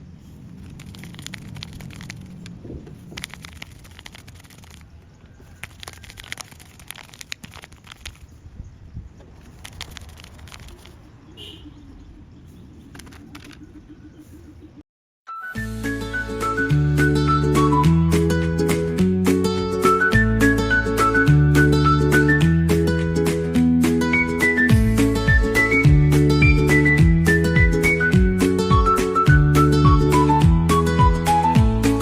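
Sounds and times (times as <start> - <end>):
low background rumble: 0.0 - 5.6
paper and plastic crinkling: 0.4 - 8.4, 9.3 - 11.0.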